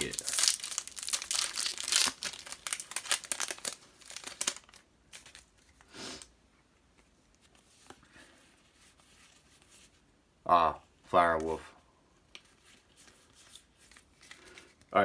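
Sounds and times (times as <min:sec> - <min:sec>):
wrapper tearing and crinkling: 0:00.0 - 0:05.6
cards rustling: 0:00.0 - 0:05.8, 0:12.4 - 0:14.9.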